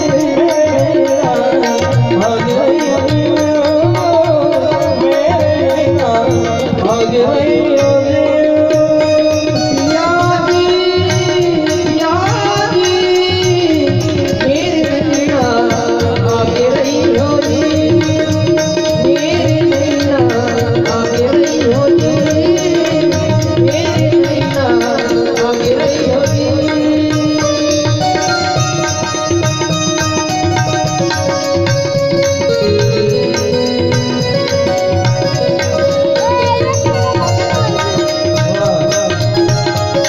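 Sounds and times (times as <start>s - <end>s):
fast drumming: 0.0s - 40.0s
gliding melody: 27.4s - 40.0s.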